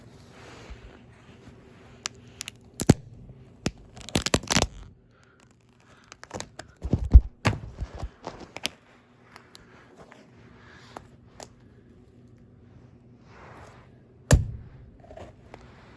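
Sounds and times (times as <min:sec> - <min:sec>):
toy cars cracking under shoe: 0:03.6 - 0:08.8.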